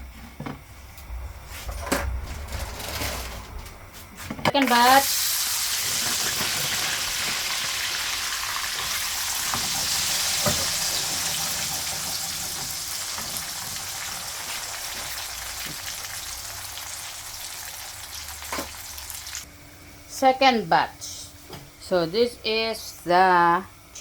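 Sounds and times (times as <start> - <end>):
chips sizzling in hot oil: 4.7 - 19.4.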